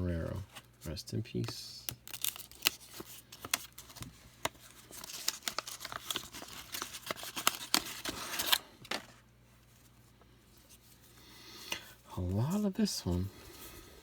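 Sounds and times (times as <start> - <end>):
cards being handled: 0.3 - 10.0
wrapper crinkling: 1.8 - 9.2.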